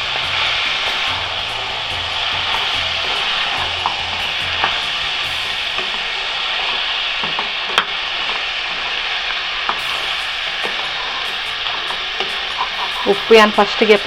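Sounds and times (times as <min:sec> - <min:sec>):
food sizzling in a pan: 0:00.0 - 0:14.0
utensil clicking against pan: 0:09.8 - 0:14.0.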